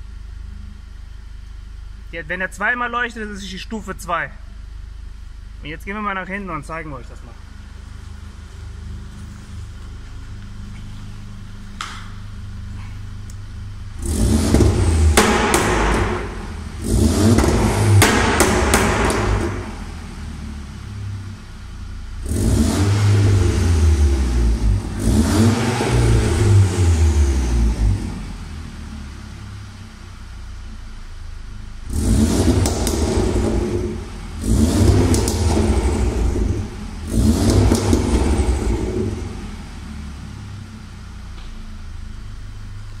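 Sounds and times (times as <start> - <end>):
car engine revving: 7.2 - 31.0, 31.6 - 43.0
exhaust pops and crackles: 11.7 - 20.0, 31.8 - 39.6.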